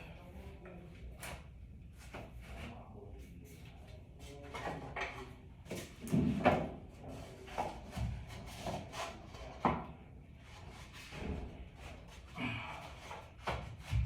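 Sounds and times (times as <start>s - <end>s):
wooden knocks and scrapes: 4.5s - 12.1s.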